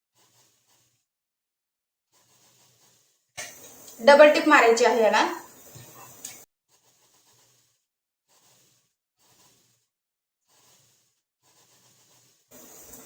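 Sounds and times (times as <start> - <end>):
faint room hiss: 3.4 - 6.4, 12.5 - 13.0.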